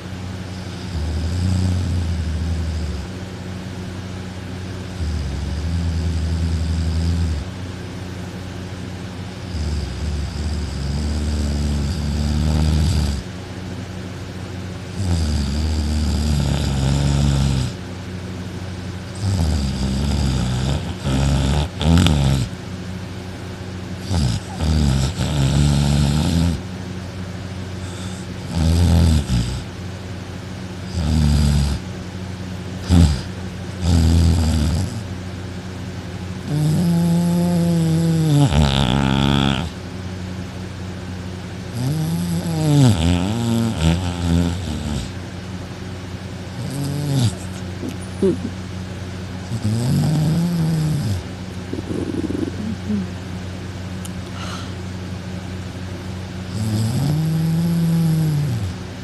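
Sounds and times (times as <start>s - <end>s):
man snoring loudly: 0.5s - 3.1s, 4.9s - 7.5s, 9.4s - 13.3s, 14.9s - 17.8s, 19.2s - 22.5s, 24.0s - 26.6s, 27.8s - 29.7s, 30.9s - 31.8s, 32.8s - 35.1s, 36.4s - 39.8s, 41.7s - 45.2s, 46.6s - 48.5s, 49.4s - 53.1s, 54.2s - 54.8s, 56.5s - 58.8s.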